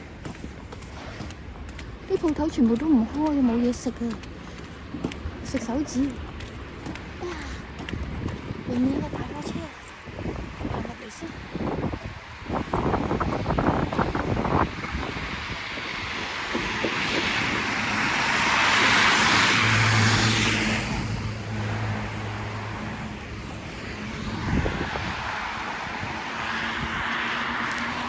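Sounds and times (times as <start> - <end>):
passing traffic: 0.0 - 28.0
large truck passing: 14.2 - 28.0.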